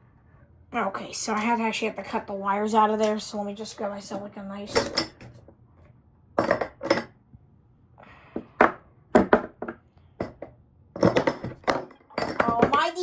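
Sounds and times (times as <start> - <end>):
hard objects clinking: 9.2 - 13.0.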